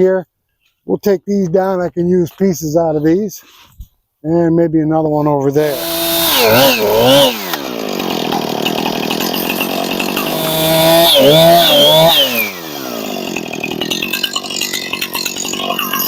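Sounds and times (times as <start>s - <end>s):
chainsaw revving: 5.6s - 16.0s.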